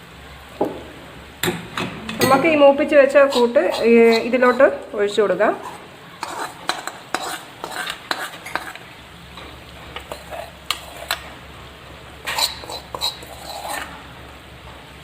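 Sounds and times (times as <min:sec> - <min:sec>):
light sizzle: 0:00.0 - 0:15.0
spoon knocking on metal pans: 0:06.2 - 0:08.8.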